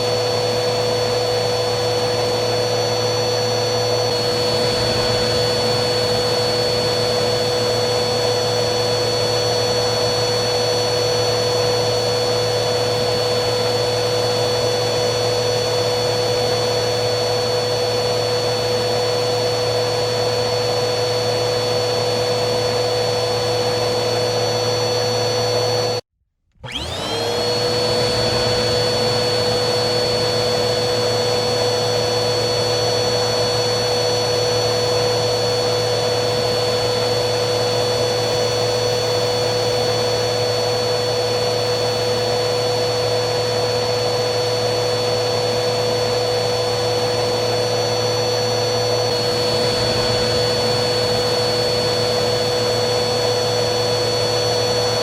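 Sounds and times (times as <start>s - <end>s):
vacuum cleaner motor whining: 0.0s - 55.0s.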